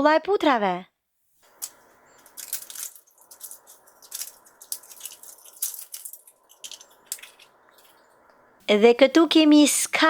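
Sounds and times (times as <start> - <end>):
plastic capsule rattling: 1.5 - 8.0
plastic wrapper crinkling: 1.5 - 8.2.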